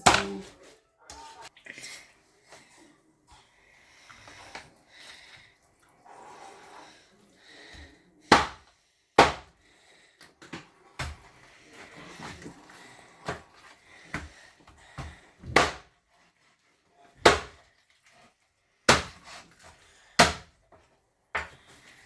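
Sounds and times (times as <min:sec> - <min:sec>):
knife chopping on cutting board: 0:08.3 - 0:08.6, 0:09.2 - 0:09.5, 0:15.0 - 0:15.9, 0:17.2 - 0:17.6, 0:18.9 - 0:19.4, 0:20.2 - 0:20.5.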